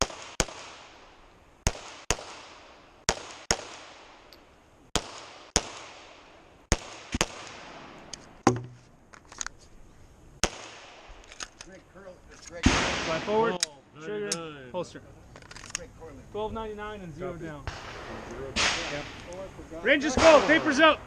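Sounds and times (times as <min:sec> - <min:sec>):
pistol shots in pairs: 0:00.0 - 0:01.0, 0:01.6 - 0:04.2, 0:04.9 - 0:08.0, 0:10.4 - 0:11.2
gunshot echo: 0:12.6 - 0:13.5, 0:17.7 - 0:19.3, 0:20.1 - 0:20.8.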